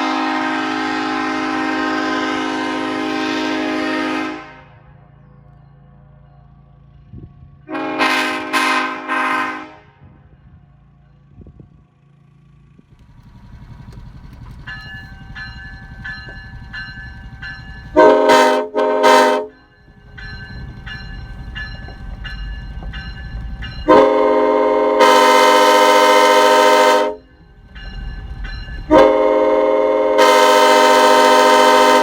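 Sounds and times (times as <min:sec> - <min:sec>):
train air horn blasts: 0:00.0 - 0:04.9, 0:07.7 - 0:10.1, 0:18.0 - 0:19.6, 0:23.8 - 0:27.3, 0:28.9 - 0:32.0
low vehicle rumble: 0:09.7 - 0:31.7.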